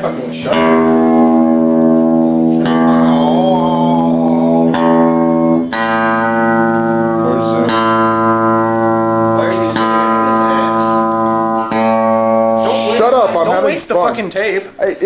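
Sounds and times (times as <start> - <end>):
guitar sustained chords: 0.0 - 14.2.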